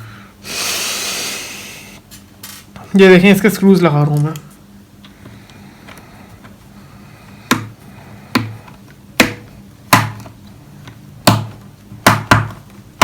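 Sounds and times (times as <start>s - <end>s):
knocks on hollow plastic casing: 9.2s - 10.3s, 11.2s - 12.7s.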